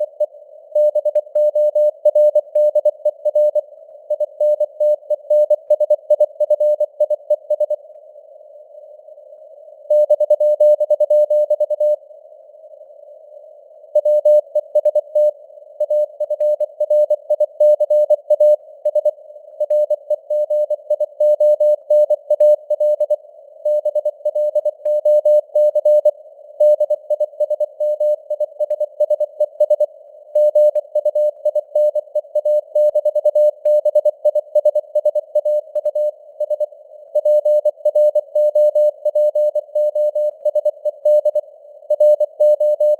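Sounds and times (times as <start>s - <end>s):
morse code beeps: 14.0s - 42.9s.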